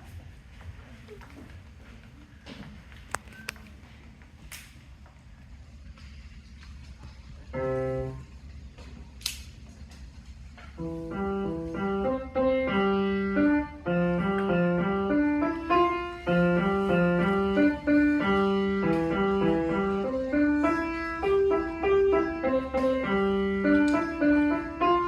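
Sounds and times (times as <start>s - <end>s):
solo piano piece: 7.5s - 8.3s, 10.8s - 25.0s.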